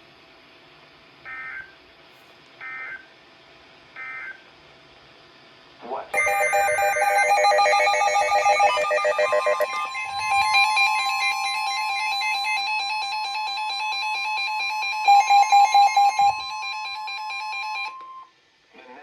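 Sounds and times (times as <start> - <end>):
short beeps: 6.2 - 10.8
warbling electronic alert tones: 6.2 - 13.2
steady high tone: 6.2 - 18.0.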